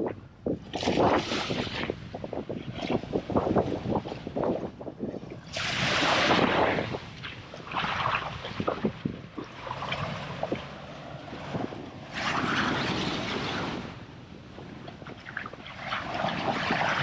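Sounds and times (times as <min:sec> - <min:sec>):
wind gusting on microphone: 0:00.0 - 0:17.0
ocean surf washing: 0:05.4 - 0:17.0.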